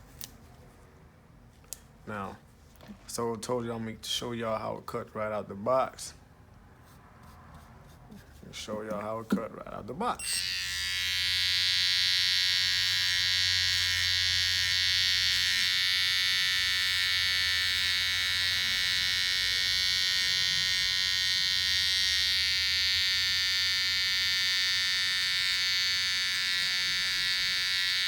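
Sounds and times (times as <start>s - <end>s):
hair trimmer buzzing: 10.2s - 28.0s.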